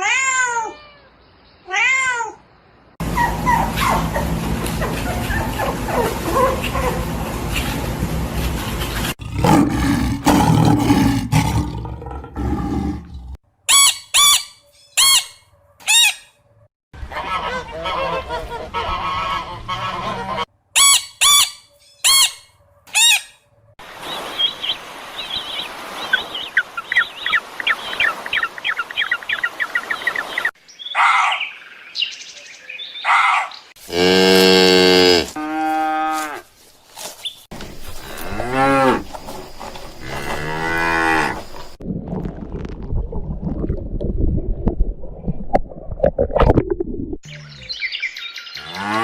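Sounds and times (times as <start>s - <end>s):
waterfowl honking: 17.1s - 23.3s.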